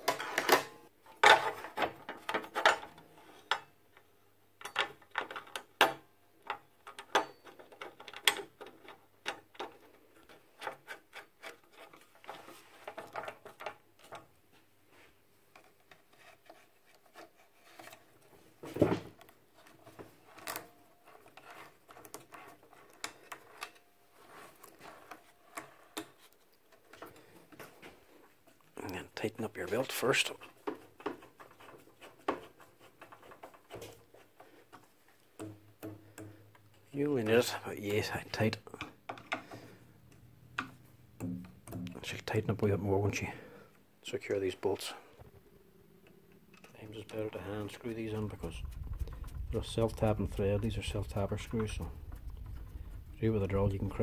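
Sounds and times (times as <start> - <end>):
hand tools clicking and tapping: 4.6 - 12.0, 30.6 - 36.8.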